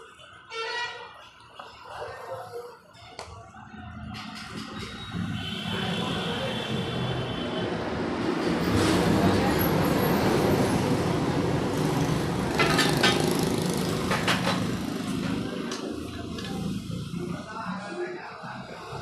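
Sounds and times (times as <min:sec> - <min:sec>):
sharp clicks or rattles: 0:12.5 - 0:15.4.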